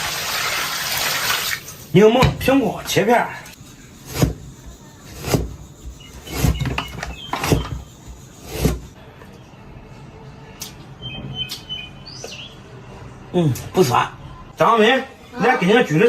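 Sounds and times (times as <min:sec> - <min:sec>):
knife slicing on cutting board: 0:05.1 - 0:05.6, 0:08.4 - 0:08.9.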